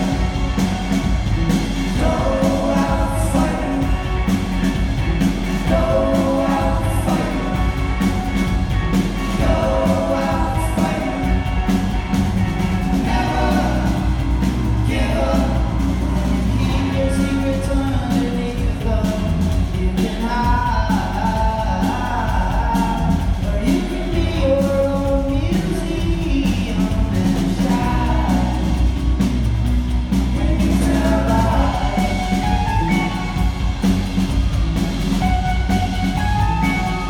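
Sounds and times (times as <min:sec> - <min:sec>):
live rock band playing: 0:00.0 - 0:37.0
person singing: 0:01.9 - 0:04.7, 0:05.5 - 0:08.3, 0:09.2 - 0:11.9, 0:12.9 - 0:14.2, 0:14.8 - 0:28.8, 0:30.4 - 0:33.6.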